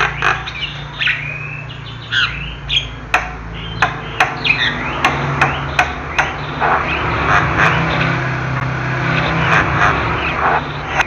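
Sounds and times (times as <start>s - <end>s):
steady low hum: 0.0s - 11.0s
bird clicking notes: 3.1s - 8.2s.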